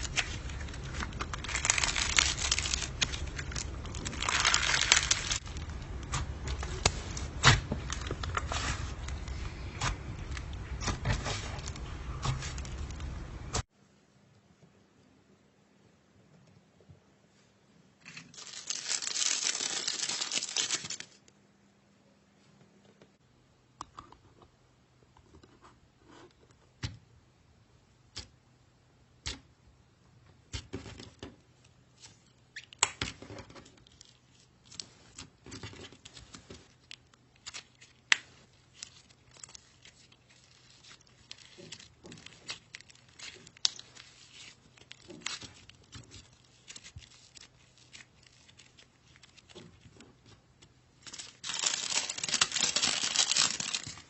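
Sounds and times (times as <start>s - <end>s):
dense crackling: 0.0s - 10.8s, 51.0s - 54.0s.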